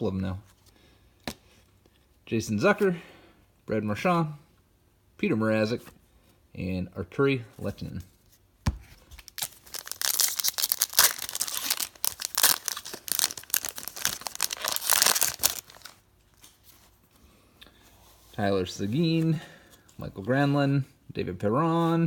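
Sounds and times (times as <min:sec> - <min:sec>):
foil wrapper tearing and crinkling: 0:09.1 - 0:16.0.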